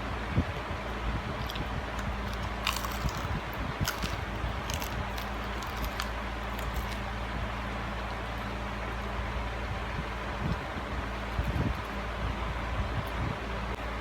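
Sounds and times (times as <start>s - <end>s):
steady low hum: 0.0s - 14.0s
chewing crispy fried chicken: 1.3s - 7.3s.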